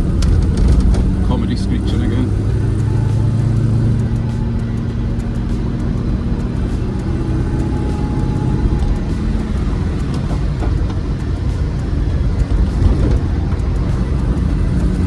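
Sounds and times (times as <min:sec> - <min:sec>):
car engine running: 0:00.0 - 0:15.0
faint tyre whine: 0:00.0 - 0:15.0
road rumble: 0:00.0 - 0:15.0.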